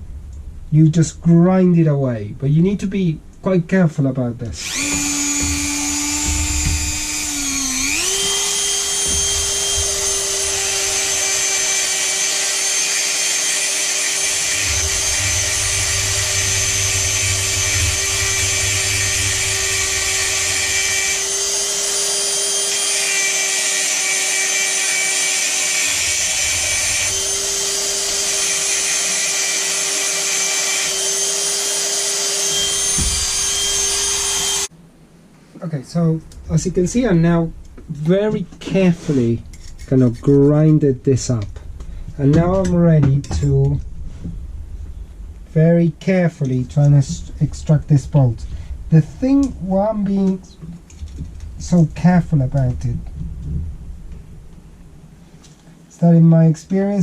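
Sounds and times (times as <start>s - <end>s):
rotary tool grinding metal: 4.6s - 34.7s.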